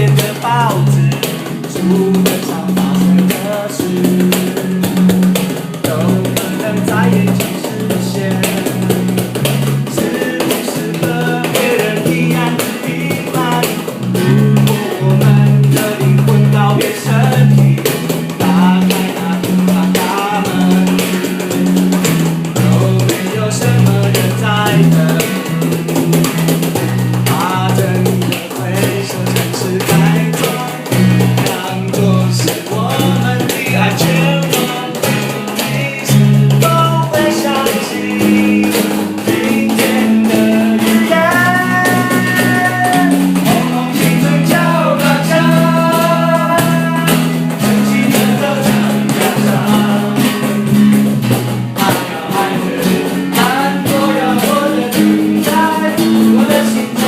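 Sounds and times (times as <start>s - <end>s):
bass line: 0.0s - 57.0s
drum kit beat: 0.0s - 57.0s
guitar: 0.0s - 57.0s
held melody notes: 0.0s - 57.0s.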